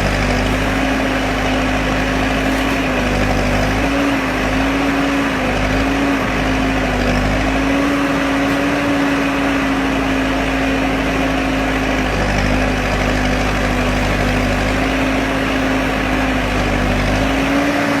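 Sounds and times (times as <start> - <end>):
diesel engine running: 0.0 - 18.0.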